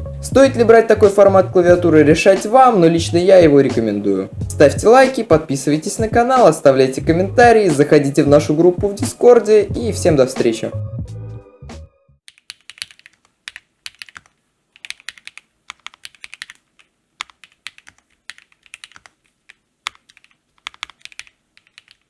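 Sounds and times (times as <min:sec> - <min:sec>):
mechanical keyboard typing: 0:12.3 - 0:22.0.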